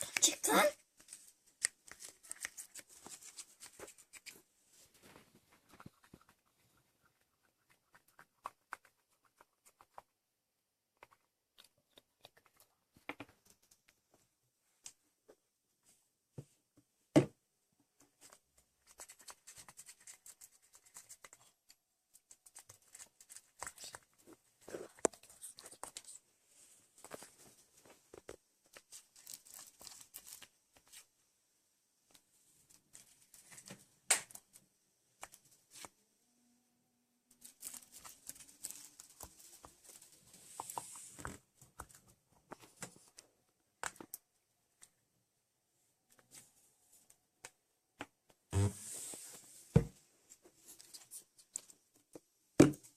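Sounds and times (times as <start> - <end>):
hands working sticky slime: 0.0 - 10.2.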